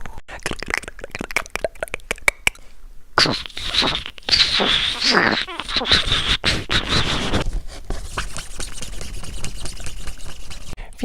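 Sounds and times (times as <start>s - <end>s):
breathy hissing vocal noises: 3.2s - 7.4s
vocal clicks: 3.2s - 7.4s.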